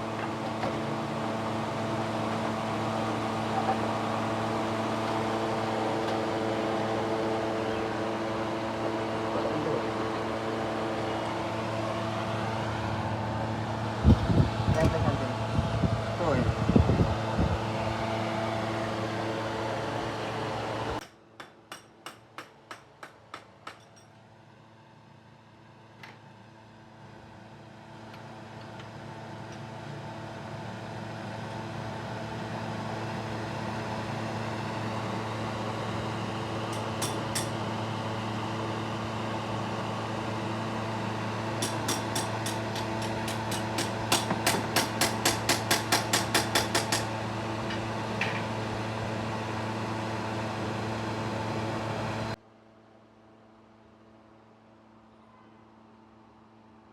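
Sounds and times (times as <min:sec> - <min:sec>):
steady machine hum: 0:00.0 - 0:21.0, 0:30.0 - 0:53.1.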